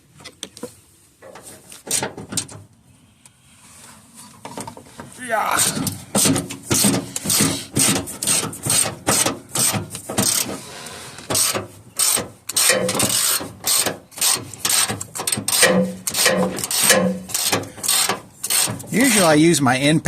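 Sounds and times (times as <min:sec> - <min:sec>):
hand ratchet clicking: 0:11.4 - 0:18.7.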